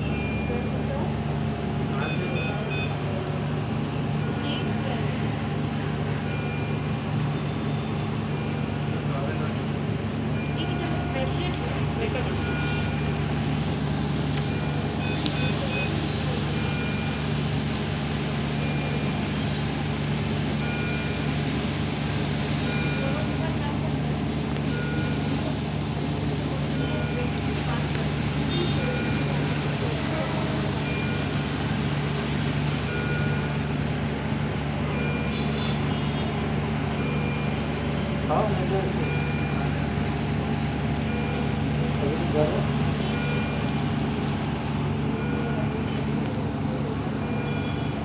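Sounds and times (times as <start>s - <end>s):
equipment hum: 25.4s - 48.0s.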